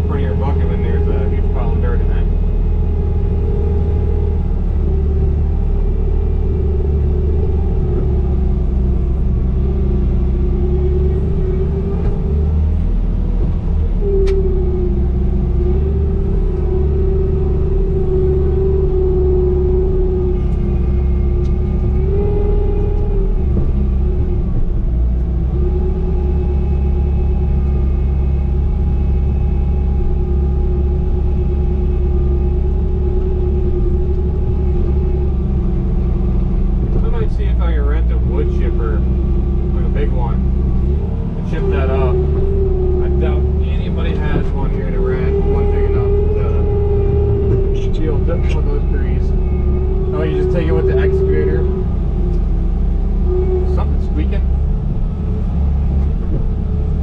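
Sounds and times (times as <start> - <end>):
diesel engine under load: 0.0 - 57.0.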